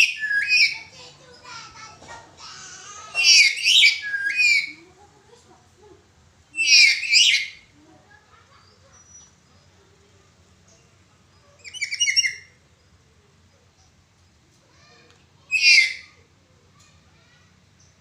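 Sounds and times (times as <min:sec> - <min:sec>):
parrot screeching calls: 0:00.0 - 0:00.9, 0:02.5 - 0:04.7, 0:06.5 - 0:07.6, 0:11.6 - 0:12.5, 0:15.5 - 0:16.2.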